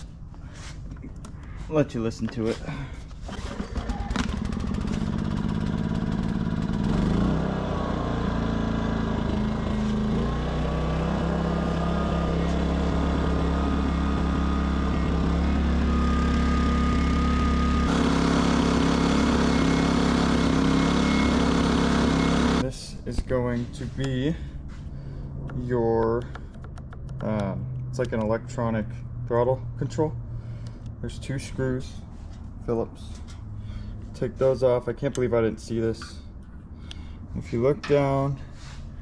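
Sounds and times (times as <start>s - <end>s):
generator engine surging at idle: 3.3s - 22.6s.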